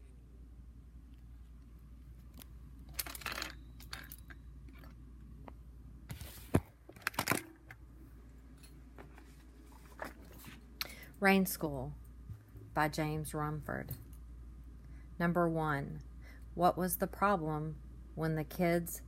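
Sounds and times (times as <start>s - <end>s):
low steady hum: 0.0s - 19.0s
handling rustles: 8.6s - 10.7s.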